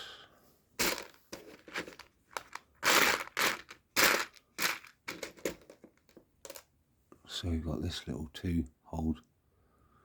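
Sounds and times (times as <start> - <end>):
plastic pieces clattering: 0.8 - 6.7.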